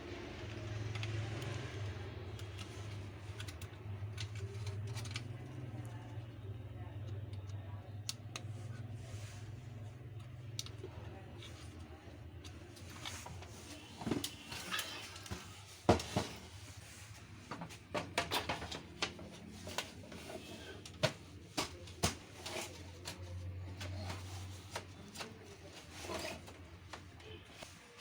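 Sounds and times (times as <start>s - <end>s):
printer parts clicking and knocking: 12.4s - 16.6s, 17.4s - 27.7s.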